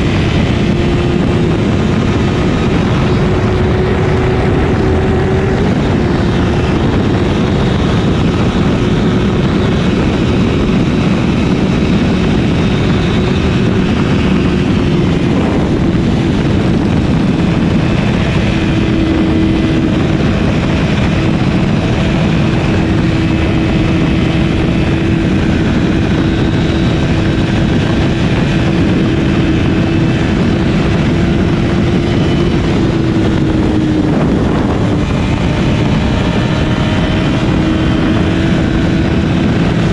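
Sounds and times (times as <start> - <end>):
motorcycle engine at high pitch: 0.0 - 39.9
wind rushing: 0.0 - 39.9.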